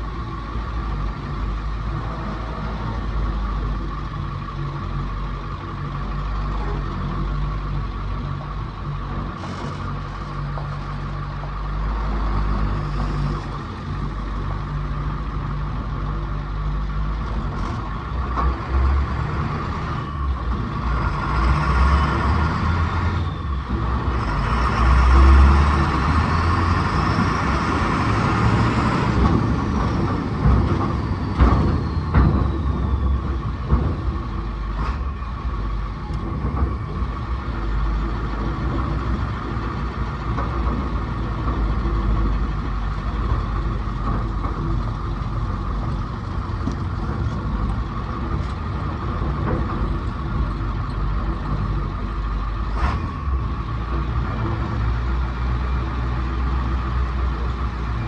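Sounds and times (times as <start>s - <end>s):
engine whine: 0.0s - 58.0s
heavy vehicle engine running: 0.0s - 58.0s
knocks and clanks: 28.4s - 55.8s.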